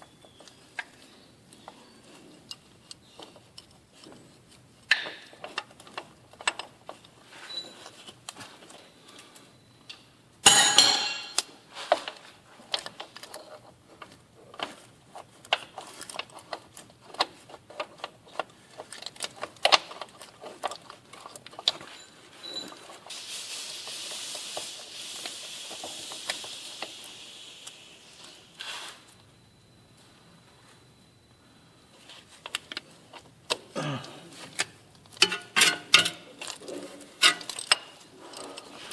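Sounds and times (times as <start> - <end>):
wrenches clinking against metal: 10.5 - 11.5, 34.5 - 38.6
steady hiss: 23.0 - 29.2.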